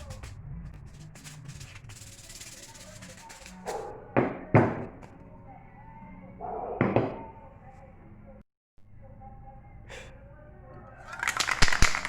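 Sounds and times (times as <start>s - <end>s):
quiet background music: 0.0s - 12.0s.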